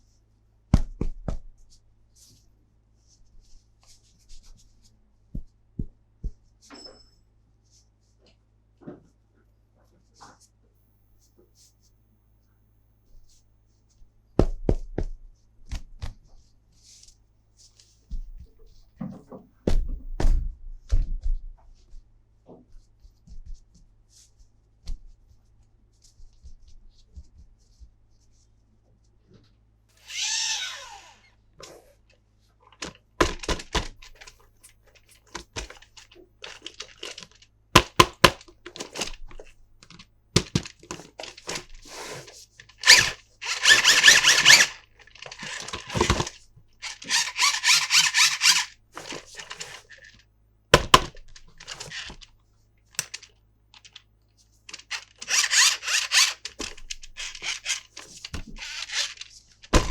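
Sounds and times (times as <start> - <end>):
packaging rustling and tearing: 35.7 - 37.4, 40.5 - 50.2, 51.3 - 52.2, 54.7 - 59.9
plastic toy clicks and knocks: 42.7 - 49.8, 53.0 - 54.0, 54.7 - 59.9.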